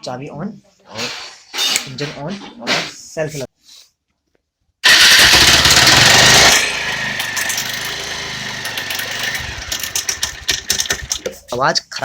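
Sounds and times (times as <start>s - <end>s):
motorcycle engine cranking: 4.8s - 12.0s
motorcycle engine idling clatter: 4.8s - 12.0s.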